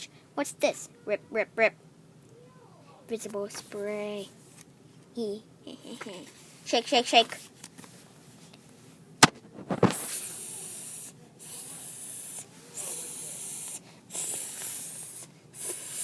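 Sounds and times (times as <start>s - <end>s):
hissing spray: 10.0s - 16.0s.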